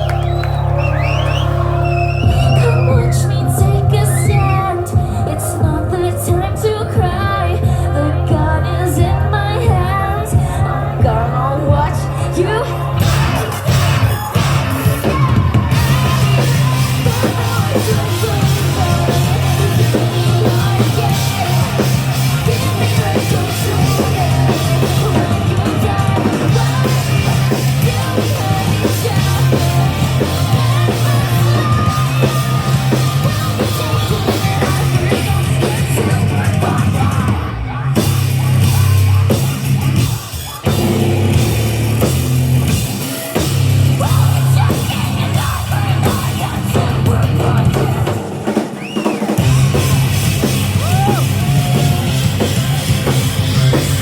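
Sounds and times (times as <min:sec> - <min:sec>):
heavy rock band playing: 0:00.0 - 0:54.0
yelled vocals: 0:00.0 - 0:54.0
pounding drums: 0:13.0 - 0:54.0.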